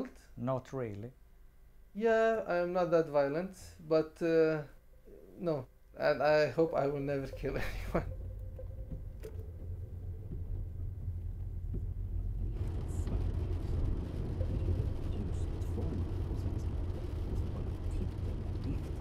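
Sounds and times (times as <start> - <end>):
low rumble: 4.8 - 19.0.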